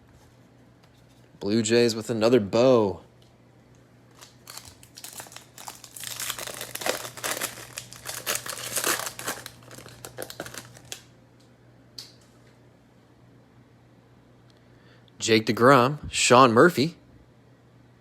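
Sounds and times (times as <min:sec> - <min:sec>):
foil wrapper tearing and crinkling: 0:04.1 - 0:11.1.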